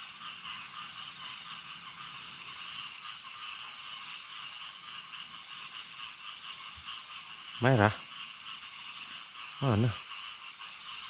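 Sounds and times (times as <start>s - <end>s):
chorus of insects: 0.0s - 11.0s
cricket chirping: 0.0s - 11.0s.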